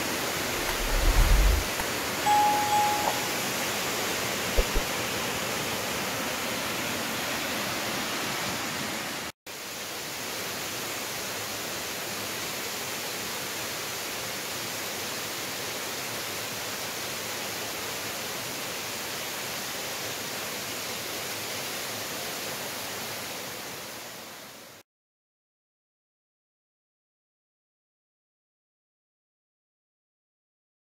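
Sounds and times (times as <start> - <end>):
waterfall rushing: 0.1 - 9.3.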